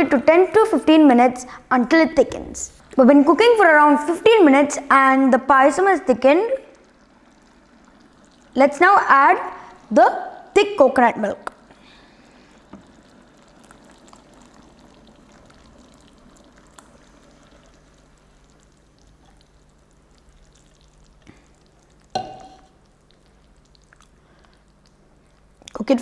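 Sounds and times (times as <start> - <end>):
faint simmering: 0.0 - 26.0
milk pouring into a pan: 12.0 - 24.6.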